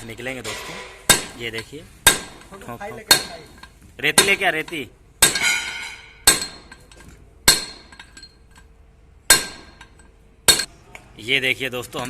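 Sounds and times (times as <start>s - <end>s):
hammer striking metal: 0.4s - 10.8s.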